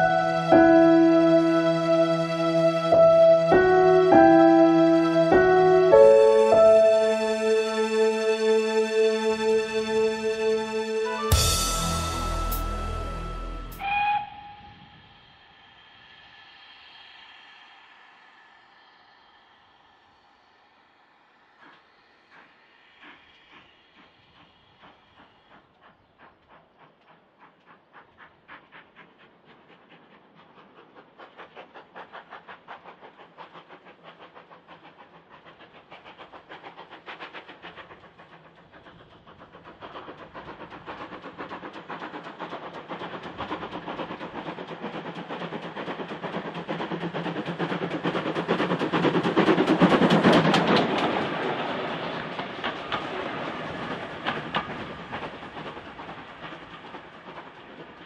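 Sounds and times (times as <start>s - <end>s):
steam locomotive beats: 0.0s - 58.0s
rail clatter: 30.7s - 58.0s.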